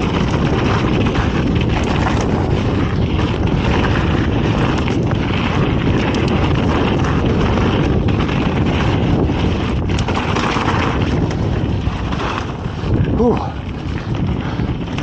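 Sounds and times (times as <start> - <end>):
bike clicks and rattles: 0.0 - 15.0
tyres rolling on dirt: 0.0 - 15.0
wind rushing over microphone: 0.0 - 15.0.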